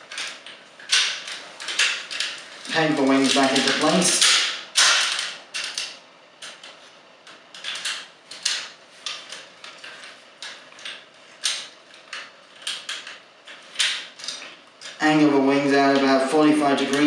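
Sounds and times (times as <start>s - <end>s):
plastic toy parts clicking: 0.1s - 15.0s.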